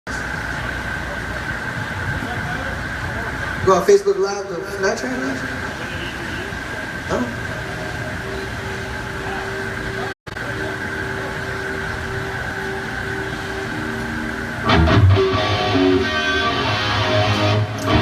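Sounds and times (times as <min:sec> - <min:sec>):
electric guitar held tone: 0:04.4 - 0:18.0
electric guitar playing: 0:07.4 - 0:18.0
low bass notes: 0:09.1 - 0:18.0.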